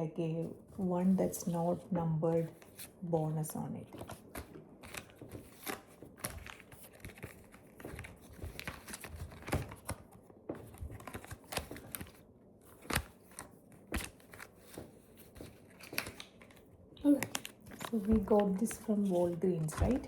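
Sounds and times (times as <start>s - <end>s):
wrapper tearing and crinkling: 15.7s - 18.9s.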